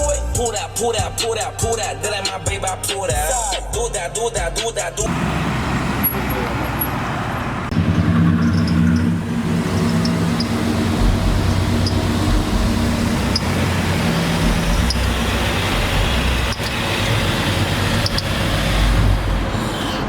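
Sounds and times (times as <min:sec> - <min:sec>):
car engine running: 0:05.0 - 0:19.8.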